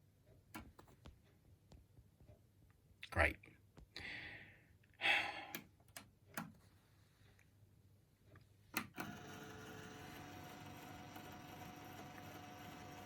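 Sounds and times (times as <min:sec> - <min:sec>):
man sighing: 0:04.0 - 0:05.6.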